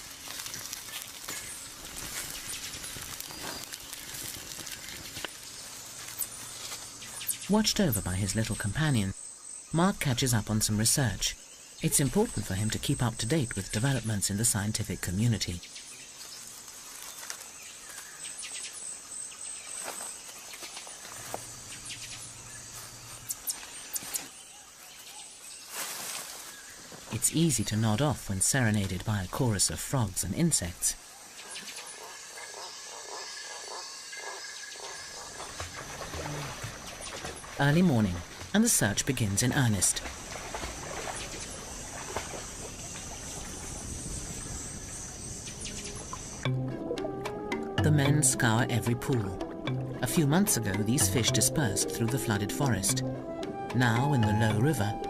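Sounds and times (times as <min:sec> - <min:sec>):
water trickling and splashing: 0:00.0 - 0:08.6, 0:34.9 - 0:46.8.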